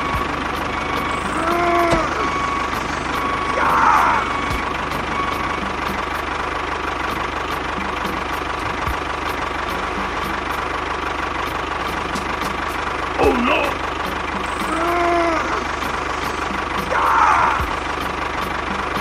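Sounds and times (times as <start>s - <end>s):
small motor whining: 0.0s - 6.0s.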